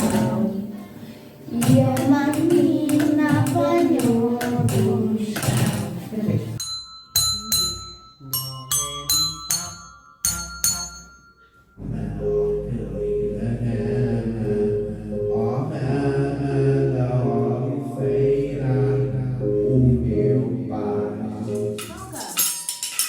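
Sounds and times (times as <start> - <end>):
ringing bell-like notes: 6.6 - 13.2
repeating pulsed note: 6.6 - 16.1
low drone: 11.8 - 21.7
voices chant-like singing: 11.8 - 21.7.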